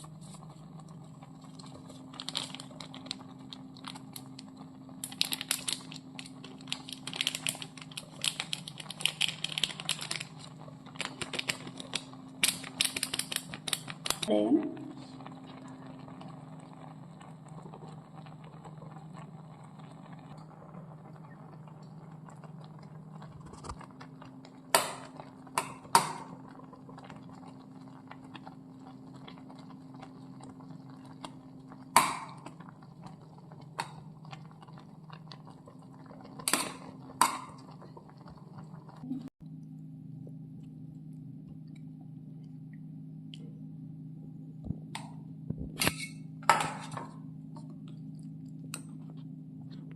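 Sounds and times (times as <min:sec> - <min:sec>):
steady low hum: 0:00.0 - 0:49.9
utensils clinking on cookware: 0:45.8 - 0:47.1.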